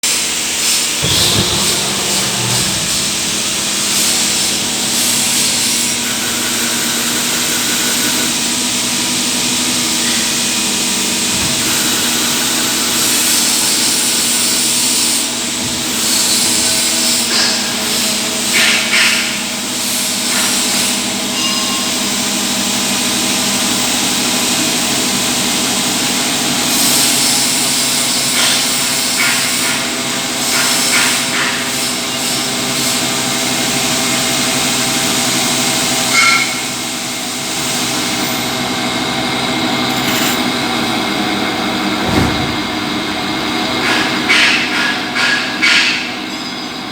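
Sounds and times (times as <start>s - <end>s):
lathe motor and spindle tones: 1.0s - 4.8s.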